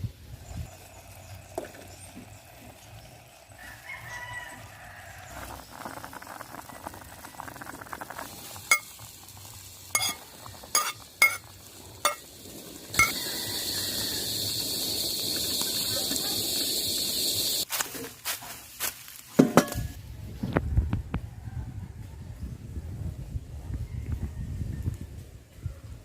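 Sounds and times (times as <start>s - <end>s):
steady high hiss: 8.3s - 17.7s.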